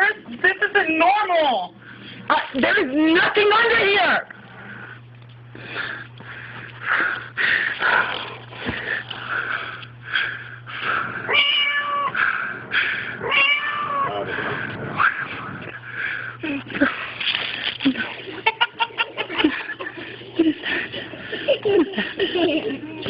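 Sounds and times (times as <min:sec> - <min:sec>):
steady low hum: 0:00.0 - 0:23.0
cat meowing through speaker: 0:11.3 - 0:12.2, 0:13.2 - 0:14.3.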